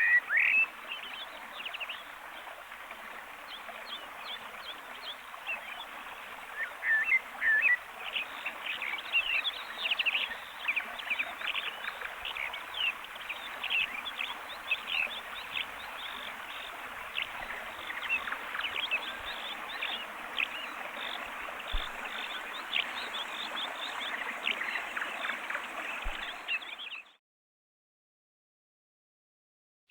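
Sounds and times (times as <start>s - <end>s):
small birds chirping: 6.6s - 27.2s.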